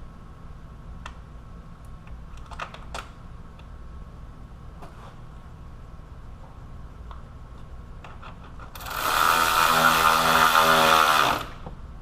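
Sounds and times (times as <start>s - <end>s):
electric power tool motor: 8.8s - 11.6s.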